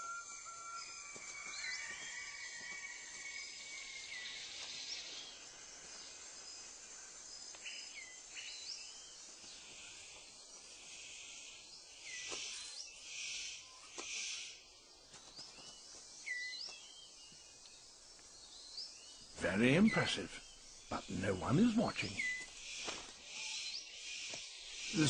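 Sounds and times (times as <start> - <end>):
whistled bird calls: 0.0 - 5.2
insects humming: 0.0 - 25.0.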